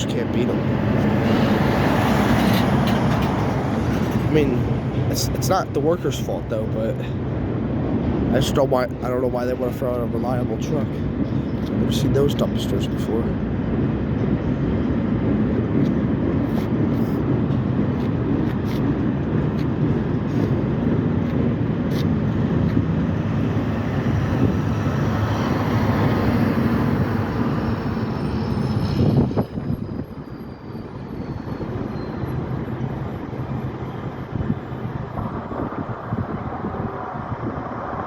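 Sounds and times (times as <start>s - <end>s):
freight train cars rumbling: 0.0s - 38.0s.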